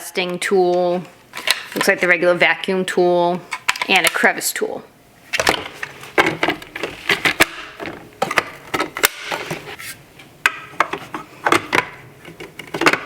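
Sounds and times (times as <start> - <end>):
plastic attachments clicking and knocking: 10.4 - 13.0.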